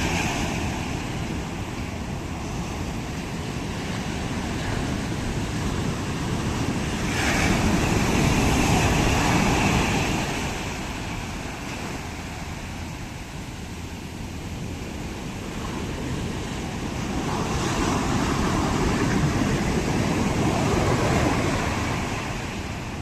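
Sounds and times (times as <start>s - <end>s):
wave breaking: 0.0s - 13.3s
surf washing on beach: 0.0s - 23.0s.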